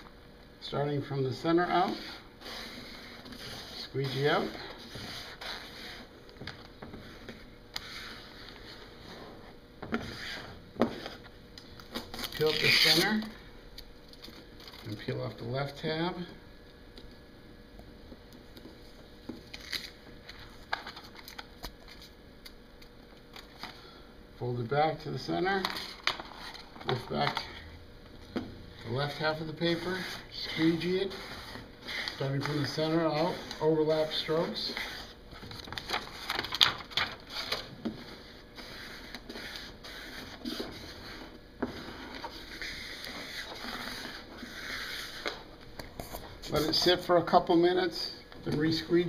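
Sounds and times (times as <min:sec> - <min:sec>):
squeegee scraping vinyl: 0:01.4 - 0:06.1, 0:06.8 - 0:13.3, 0:28.8 - 0:47.2
tape peeling crackles and clicks: 0:19.4 - 0:20.0.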